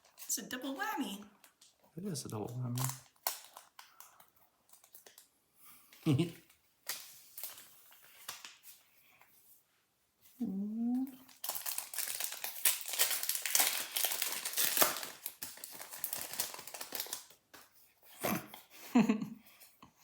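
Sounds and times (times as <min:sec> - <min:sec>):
foil wrapper crinkling: 0:01.4 - 0:05.3, 0:06.0 - 0:08.8, 0:11.2 - 0:17.7.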